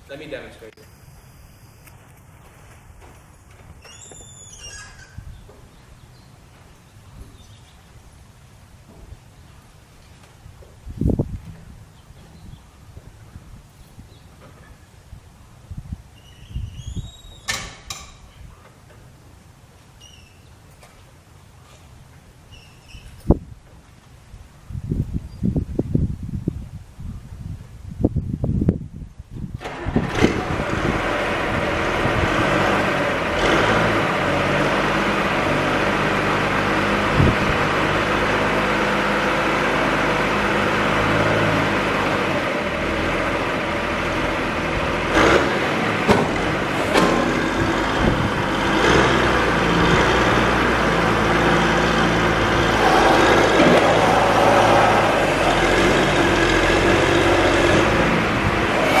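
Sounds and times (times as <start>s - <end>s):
diesel engine running: 29.6s - 59.0s
short clunks: 46.0s - 47.7s.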